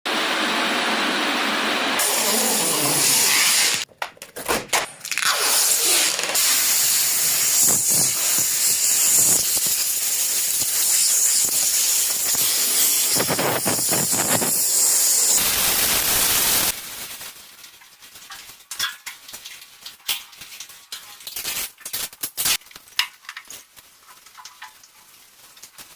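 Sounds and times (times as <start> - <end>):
loud steady hiss: 0.1 - 3.8, 5.6 - 17.6.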